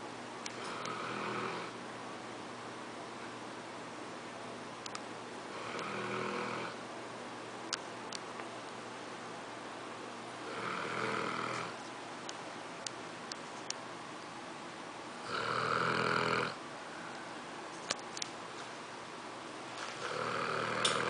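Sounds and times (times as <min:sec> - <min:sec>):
dog snoring: 0:00.5 - 0:01.8, 0:05.5 - 0:06.8, 0:10.4 - 0:11.8, 0:15.2 - 0:16.6, 0:19.9 - 0:21.0.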